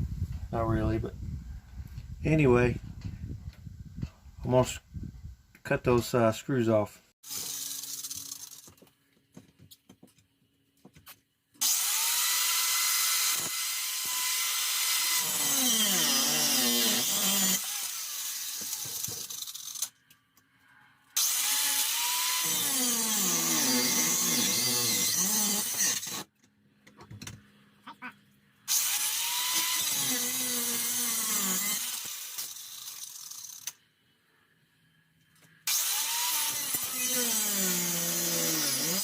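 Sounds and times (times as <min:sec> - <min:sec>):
power saw cutting metal screws: 0:07.2 - 0:08.8, 0:11.6 - 0:19.9, 0:21.2 - 0:26.3, 0:28.7 - 0:33.8, 0:35.6 - 0:39.0.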